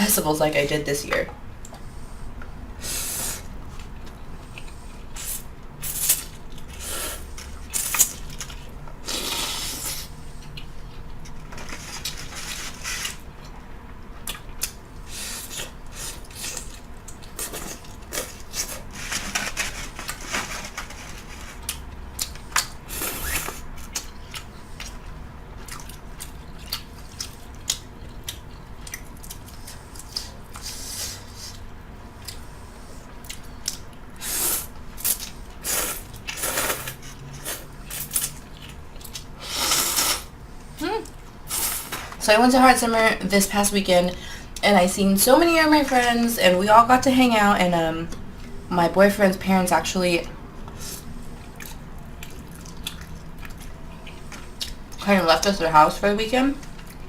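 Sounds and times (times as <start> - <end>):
wet chewing: 21.6 - 30.6, 51.4 - 54.8.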